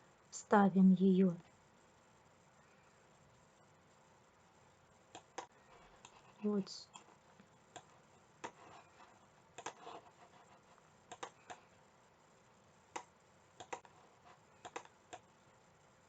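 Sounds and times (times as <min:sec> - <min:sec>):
computer mouse clicks: 0:05.1 - 0:11.8, 0:12.9 - 0:15.3.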